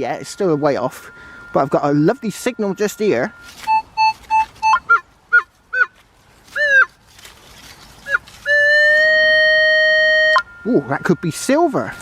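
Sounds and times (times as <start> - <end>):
metal detector signal tones: 0.0 - 7.0, 8.0 - 12.0.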